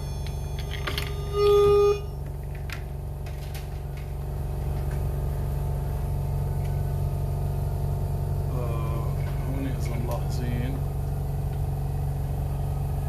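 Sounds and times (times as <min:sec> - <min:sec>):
loud electronic beep: 0:00.0 - 0:02.2
ventilator humming: 0:00.0 - 0:13.0.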